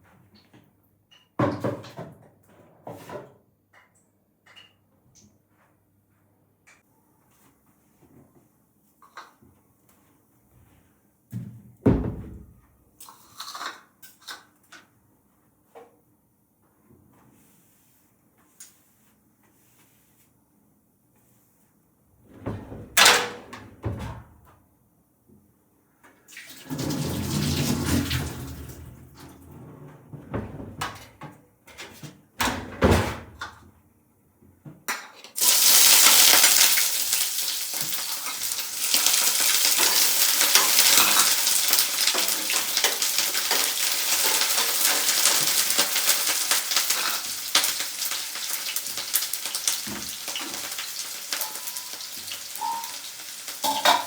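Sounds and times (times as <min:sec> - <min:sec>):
kitchen utensils and dishes clattering: 0:01.1 - 0:04.8, 0:13.0 - 0:14.6, 0:26.6 - 0:32.1, 0:34.9 - 0:54.0
food sizzling in hot oil: 0:35.4 - 0:54.0.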